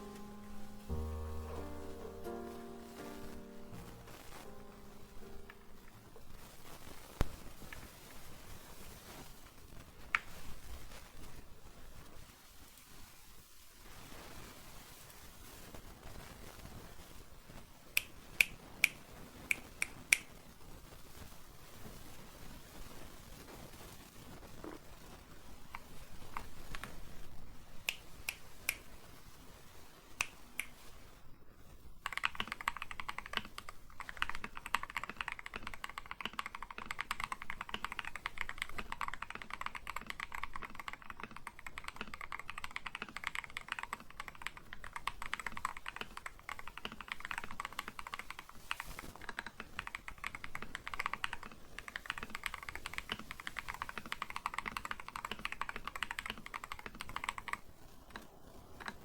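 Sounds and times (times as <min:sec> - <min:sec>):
typing on mechanical keyboard: 0:32.0 - 0:59.0.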